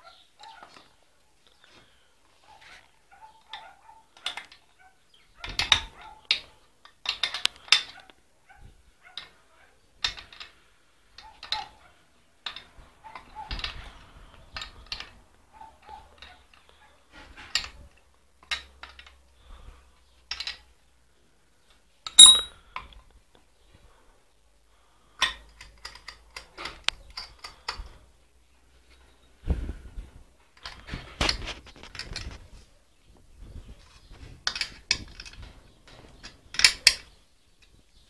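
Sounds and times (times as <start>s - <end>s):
metal parts and tools clinking: 22.1s - 22.5s
sharp ringing metal clink: 22.1s - 22.5s.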